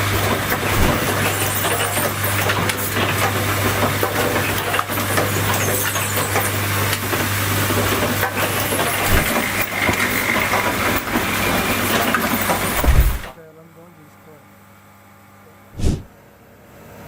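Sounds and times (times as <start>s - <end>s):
machine hum and mechanical noise: 0.0s - 17.0s
machine clicks and knocks: 8.1s - 11.1s, 12.0s - 13.3s.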